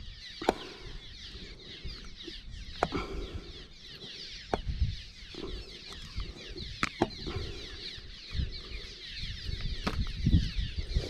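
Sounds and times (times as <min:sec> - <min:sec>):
flock of small birds chattering: 0:00.0 - 0:11.0.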